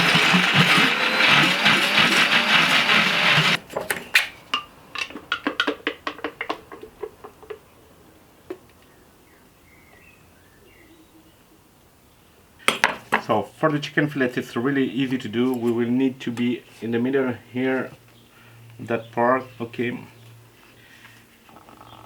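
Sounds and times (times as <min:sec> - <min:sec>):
electric blender running: 0:00.0 - 0:03.6.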